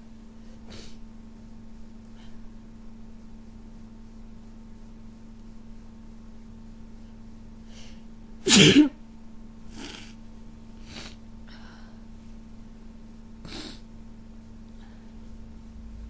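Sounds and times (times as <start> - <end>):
person sneezing: 8.5 - 9.0, 13.4 - 13.8
breathy sniffs and breaths: 10.8 - 12.0.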